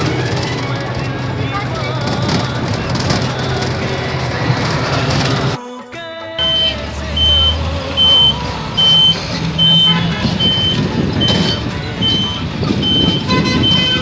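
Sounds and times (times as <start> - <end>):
low engine hum: 0.0 - 5.6, 6.4 - 14.0
reversing alarm beeping: 6.4 - 14.0.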